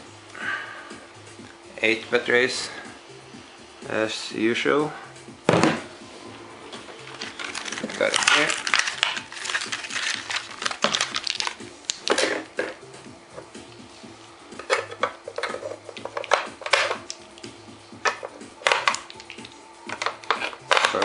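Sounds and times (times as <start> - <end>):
batteries clicking into compartment: 7.2 - 12.8, 18.0 - 21.0.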